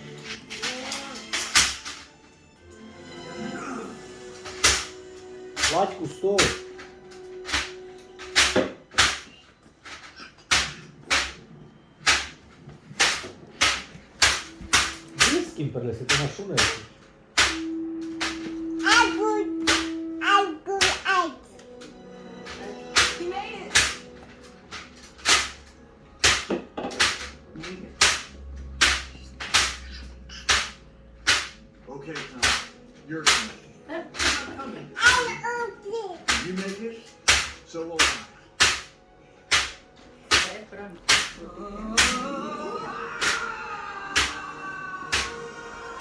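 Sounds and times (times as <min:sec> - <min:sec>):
sharp slaps or bangs: 0:00.6 - 0:02.1, 0:04.4 - 0:09.4, 0:10.5 - 0:11.4, 0:12.0 - 0:12.4, 0:13.0 - 0:20.2, 0:20.8 - 0:21.2, 0:22.5 - 0:35.5, 0:36.2 - 0:41.4, 0:42.0 - 0:42.3, 0:43.2 - 0:45.5.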